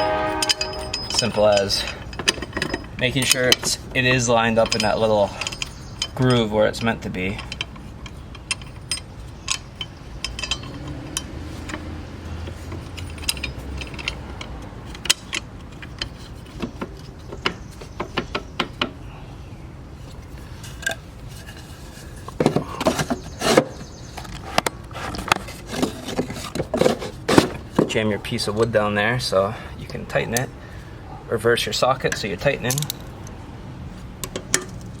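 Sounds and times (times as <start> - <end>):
small metal clinks and scrapes: 0.0 - 19.1, 20.0 - 28.0, 32.0 - 33.3.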